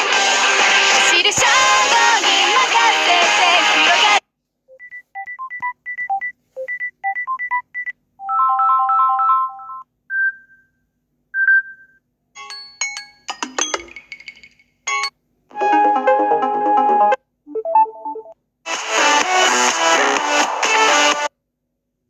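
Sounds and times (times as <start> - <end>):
multi-note ringtone: 12.4 - 14.3
chime notes: 12.4 - 16.1.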